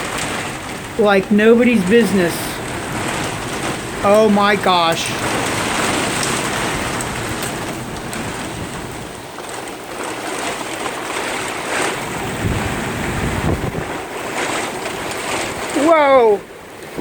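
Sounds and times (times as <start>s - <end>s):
heavy rain pouring: 0.0s - 17.0s
wind gusts buffeting microphone: 0.0s - 17.0s.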